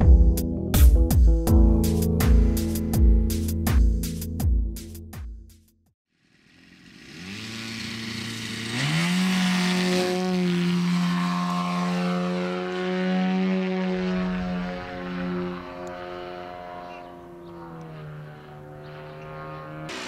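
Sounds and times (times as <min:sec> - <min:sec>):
model plane engine and propeller: 0:06.1 - 0:20.0.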